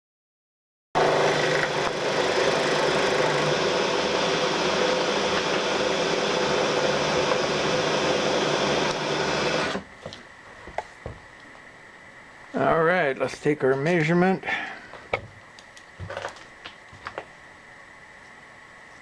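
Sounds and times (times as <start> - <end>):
milling machine cutting metal: 1.0 - 9.9.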